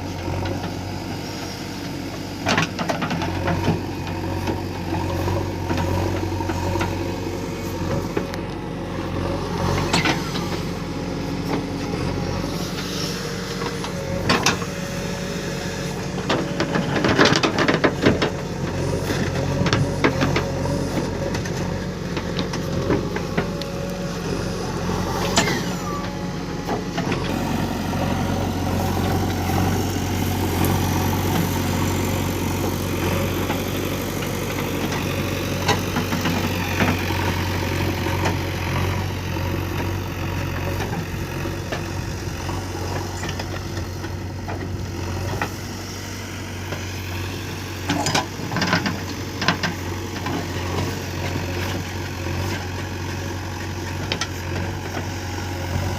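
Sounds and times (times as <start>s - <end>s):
diesel engine running: 0.0s - 55.9s.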